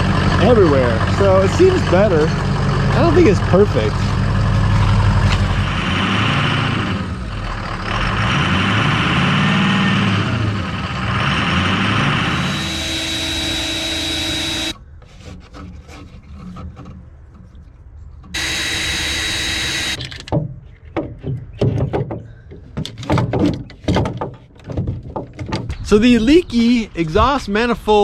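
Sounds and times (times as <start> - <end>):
small motor running: 11.0 - 14.8, 18.4 - 20.0
scattered clicks and knocks: 18.3 - 25.9.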